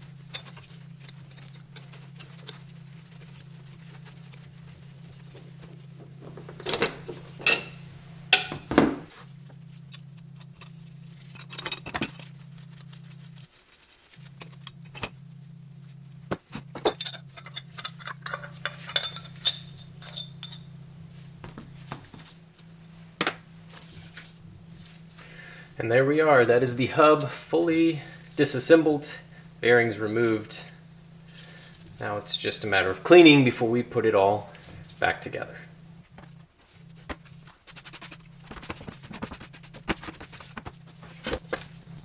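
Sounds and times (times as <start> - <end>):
metal parts clinking and knocking: 16.8 - 20.7, 41.1 - 42.0.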